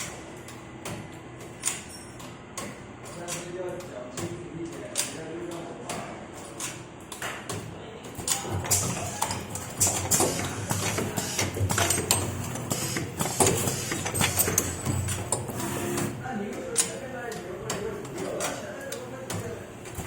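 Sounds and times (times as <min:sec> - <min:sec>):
machine clicks and knocks: 0:00.0 - 0:20.0.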